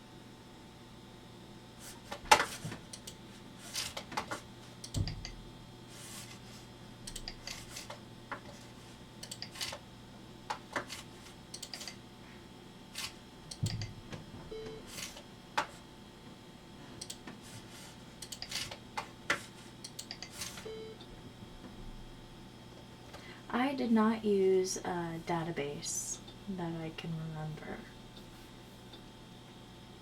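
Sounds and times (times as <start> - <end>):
faint steady hum: 0.0 - 30.0
computer mouse and key clicks: 2.3 - 3.2, 3.8 - 5.4, 7.0 - 8.6, 9.2 - 9.8, 10.5 - 12.0, 13.0 - 13.9, 17.0 - 17.4, 18.2 - 20.7.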